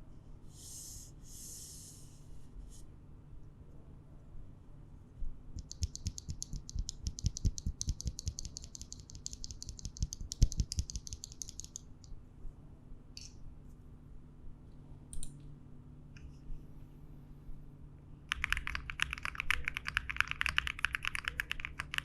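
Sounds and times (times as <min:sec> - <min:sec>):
mechanical keyboard typing: 0:05.6 - 0:11.9, 0:18.3 - 0:22.0.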